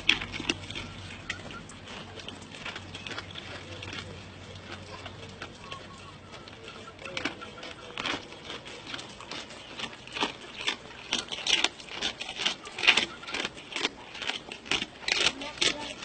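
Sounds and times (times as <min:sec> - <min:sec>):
goat chewing with crisp crunches: 0:00.0 - 0:16.0.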